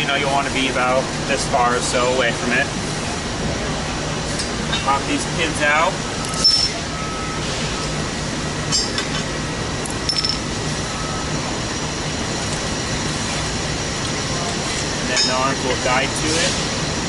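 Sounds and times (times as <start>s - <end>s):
metallic pin clinks: 10.1s - 10.4s.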